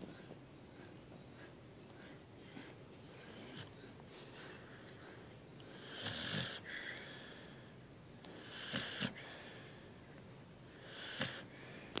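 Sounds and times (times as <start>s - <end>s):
dog snoring: 5.7s - 6.7s, 8.3s - 9.2s, 10.8s - 11.5s.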